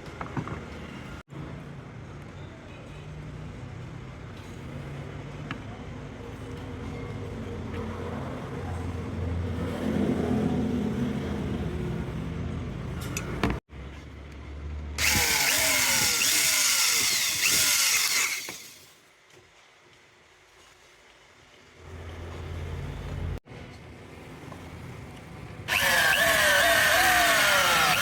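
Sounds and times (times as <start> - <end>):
hissy whining power tool: 15.0 - 18.8, 25.7 - 28.0
power tool motor hum: 15.0 - 18.9, 25.7 - 28.0.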